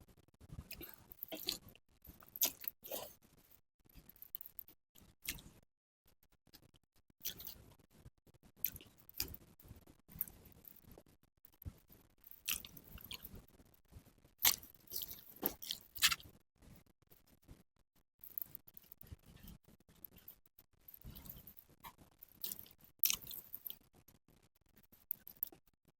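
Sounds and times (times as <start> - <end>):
close chewing: 0.6 - 3.2, 12.3 - 13.3, 14.4 - 16.3, 20.9 - 23.9.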